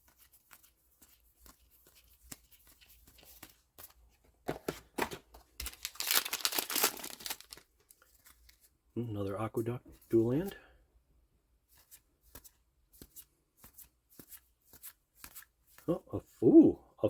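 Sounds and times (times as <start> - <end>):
foil wrapper crinkling and tearing: 5.6 - 8.7.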